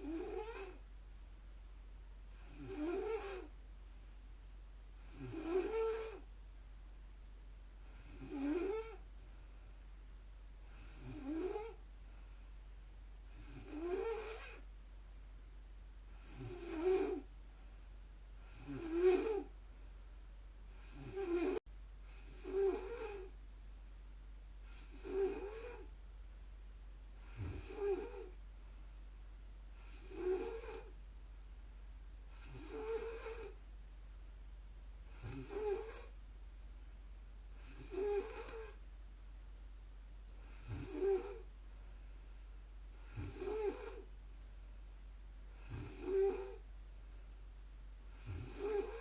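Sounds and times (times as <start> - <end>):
woman snoring: 0.0 - 0.8, 2.3 - 3.6, 5.0 - 6.3, 7.8 - 9.1, 10.6 - 11.8, 13.3 - 14.7, 16.1 - 17.3, 18.4 - 19.6, 20.7 - 23.4, 24.7 - 25.9, 27.2 - 28.4, 29.8 - 31.0, 32.3 - 33.7, 35.1 - 36.2, 37.6 - 38.8, 40.4 - 41.5, 43.0 - 44.1, 45.5 - 46.7, 48.1 - 49.0.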